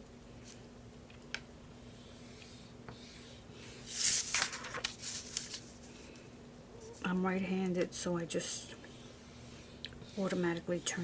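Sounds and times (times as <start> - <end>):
paper rustling and creasing: 3.9 - 6.2.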